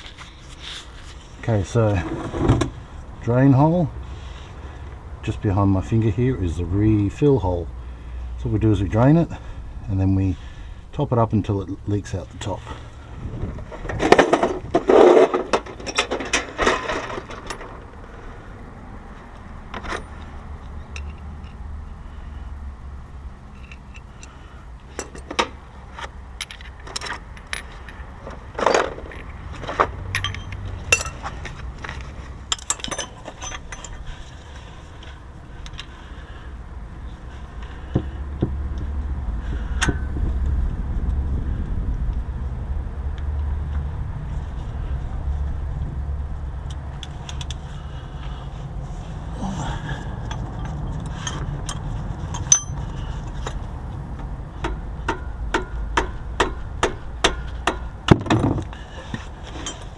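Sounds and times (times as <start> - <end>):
low rumble: 9.5 - 14.9, 33.6 - 54.5
hand tools clinking on metal: 30.1 - 31.4, 32.5 - 34.2, 50.0 - 53.1, 59.5 - 59.9.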